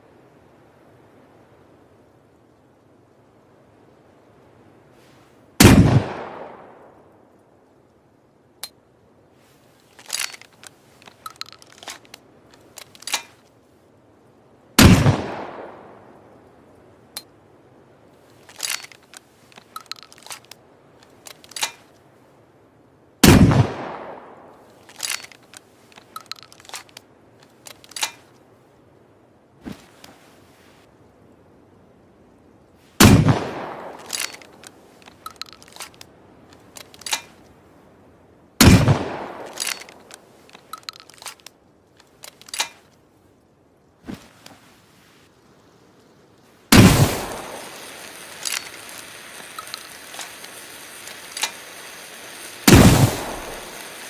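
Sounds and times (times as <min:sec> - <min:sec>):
shotgun shots: 0:05.6 - 0:06.6, 0:14.8 - 0:15.8, 0:23.2 - 0:24.3, 0:33.0 - 0:34.4, 0:38.6 - 0:40.0, 0:46.7 - 0:49.0, 0:52.6 - 0:53.9
metallic clicks of gun handling: 0:09.7 - 0:13.6, 0:18.2 - 0:22.2, 0:24.6 - 0:28.5, 0:33.6 - 0:37.6, 0:38.6 - 0:43.1, 0:46.8 - 0:54.0.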